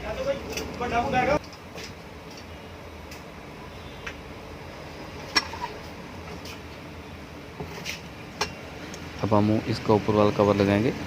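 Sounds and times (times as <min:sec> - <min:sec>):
low steady hum: 0:00.0 - 0:11.0
fan motor parts clicking: 0:00.2 - 0:03.3, 0:07.6 - 0:09.4.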